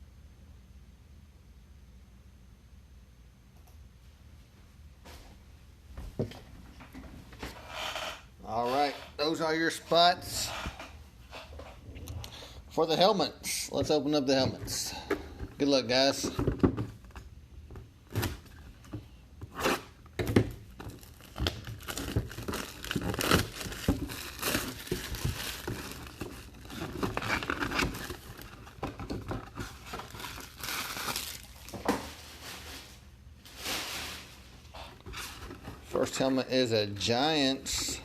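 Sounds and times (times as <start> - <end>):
packaging crinkling: 20.6 - 34.3
packaging tearing: 20.8 - 31.9.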